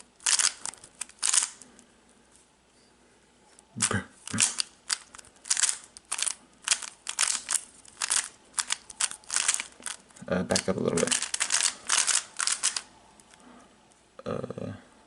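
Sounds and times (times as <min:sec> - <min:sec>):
puzzle cube clicking and scraping: 0:00.0 - 0:01.8, 0:03.8 - 0:13.4.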